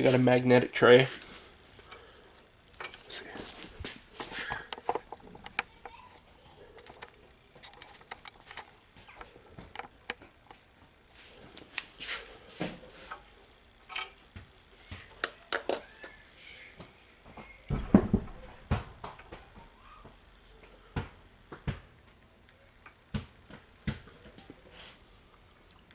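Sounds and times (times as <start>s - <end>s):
small metal tools clicking: 13.9s - 14.2s.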